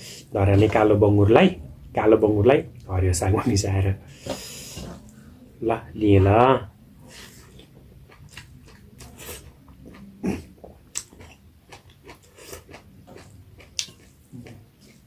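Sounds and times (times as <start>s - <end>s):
person chewing food: 7.0s - 15.0s
mouth clicks and smacks: 13.6s - 15.0s.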